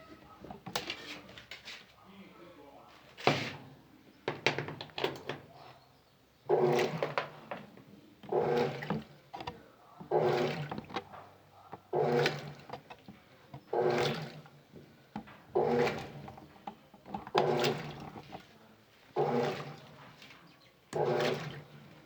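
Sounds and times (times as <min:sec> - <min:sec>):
washing machine agitating: 0:06.4 - 0:22.0
motor hum: 0:08.2 - 0:11.1, 0:11.8 - 0:14.6, 0:15.2 - 0:18.4, 0:19.1 - 0:19.9, 0:21.0 - 0:22.0.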